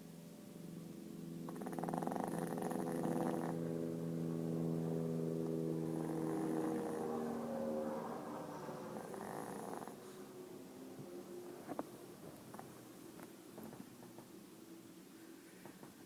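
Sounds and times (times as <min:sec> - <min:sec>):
dog snoring: 0:01.4 - 0:03.7, 0:05.5 - 0:07.4, 0:08.4 - 0:10.2.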